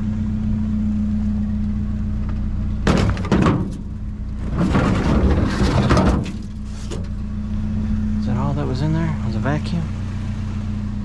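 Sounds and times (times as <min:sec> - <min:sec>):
truck engine idling: 0:00.0 - 0:11.0
junk clattering in a dumpster: 0:02.8 - 0:07.2.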